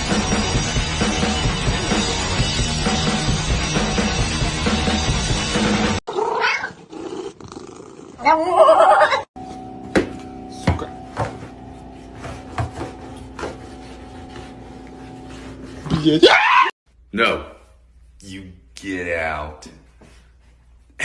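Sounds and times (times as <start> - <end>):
rock music: 0.0 - 6.0
cat meowing: 6.1 - 6.8.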